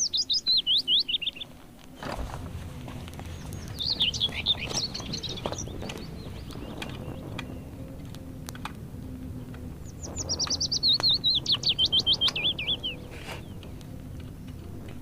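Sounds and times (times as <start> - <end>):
bird whistling fast notes: 10.0 - 13.6.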